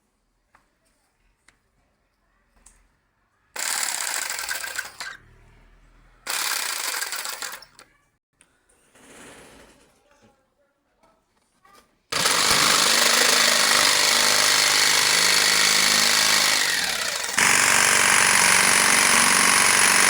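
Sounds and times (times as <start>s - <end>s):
power tool rattling: 3.6s - 5.2s, 6.3s - 7.8s, 12.2s - 20.0s.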